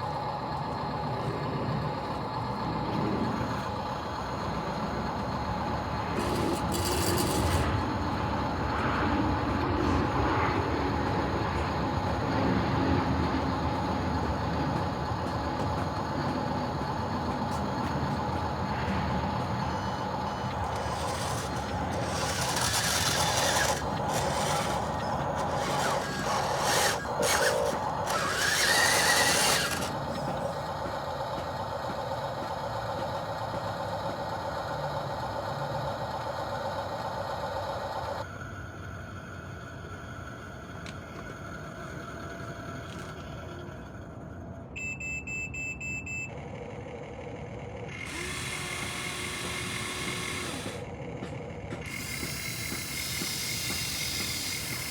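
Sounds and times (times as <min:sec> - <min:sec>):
small electric motors whining: 0:00.0 - 0:44.6, 0:46.4 - 0:54.9
grinding hiss: 0:06.0 - 0:08.2, 0:19.3 - 0:31.3, 0:48.0 - 0:50.9, 0:51.8 - 0:54.9.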